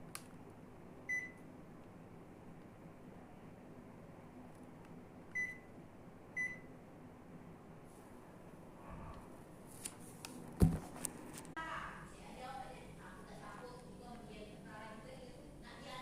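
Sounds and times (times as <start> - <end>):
low steady hum: 0.0 - 16.0
air conditioner beeps: 1.0 - 1.5, 5.2 - 6.8
loud thump: 10.6 - 10.9.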